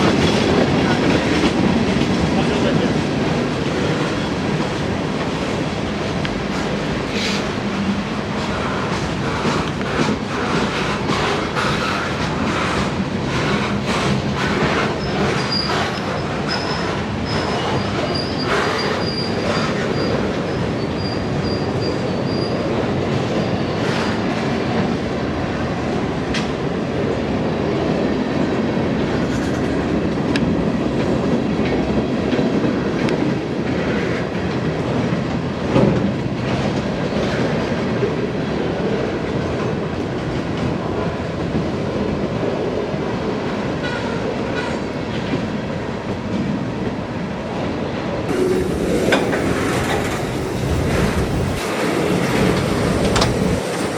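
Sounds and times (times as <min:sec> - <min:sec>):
freight train wheels rumbling: 0:00.0 - 0:53.9
high wheel squeal: 0:14.9 - 0:22.7
wheels clacking over rail joints: 0:48.3 - 0:53.9.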